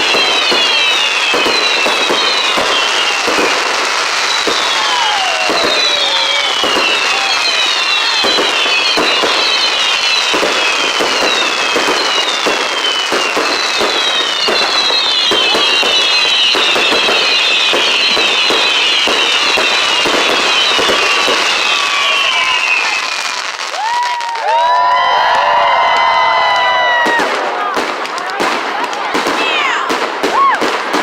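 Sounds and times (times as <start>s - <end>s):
falling firework whistles: 0.0s - 24.6s
fireworks bangs and crackles: 0.0s - 31.0s.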